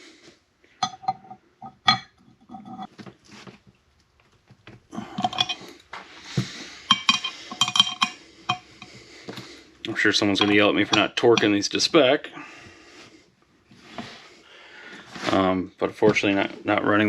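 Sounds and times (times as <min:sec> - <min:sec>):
metal tools clinking and clicking: 0:05.1 - 0:05.8, 0:06.9 - 0:08.6, 0:10.2 - 0:11.6.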